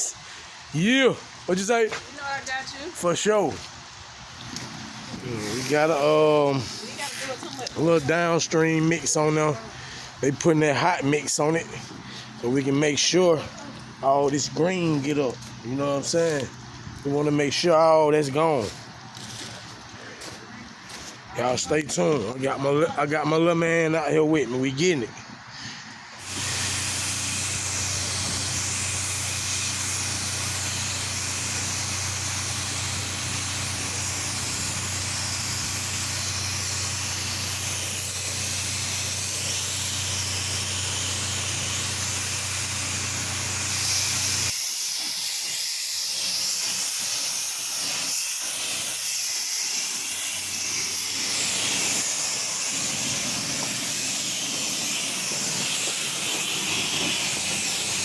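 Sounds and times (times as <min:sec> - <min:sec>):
pressure washer spray hiss: 0:00.0 - 0:58.0
machine humming: 0:26.1 - 0:44.6.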